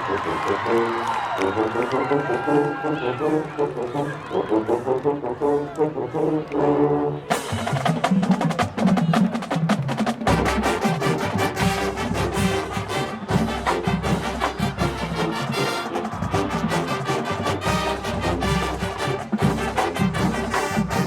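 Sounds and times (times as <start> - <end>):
marching band percussion: 7.3 - 21.0.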